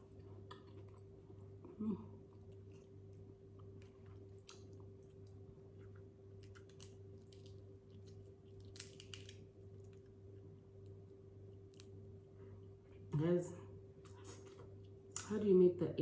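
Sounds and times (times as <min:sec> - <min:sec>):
close-up chewing with crunches: 0:00.0 - 0:10.1
low electrical hum: 0:00.0 - 0:16.0.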